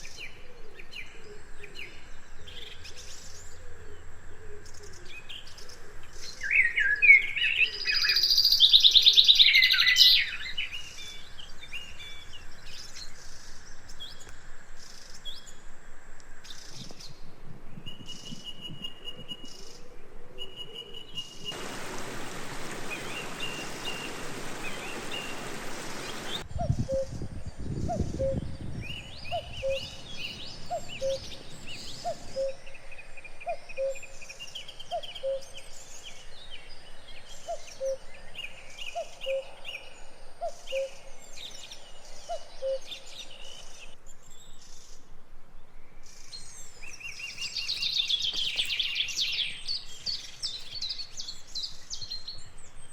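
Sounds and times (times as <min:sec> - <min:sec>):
birds singing and chirping: 0:20.4 - 0:40.0
steady hiss: 0:21.5 - 0:26.4.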